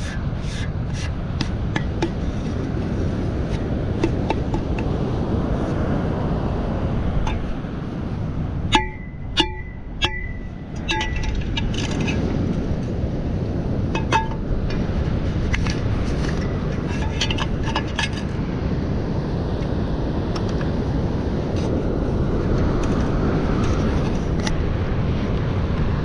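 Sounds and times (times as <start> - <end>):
wind noise: 0.0 - 26.0
ringing clinks: 8.7 - 11.4.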